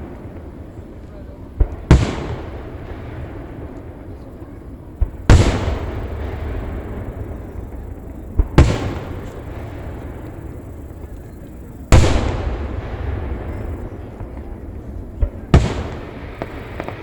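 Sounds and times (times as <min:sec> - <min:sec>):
fireworks booming: 0:00.0 - 0:17.0.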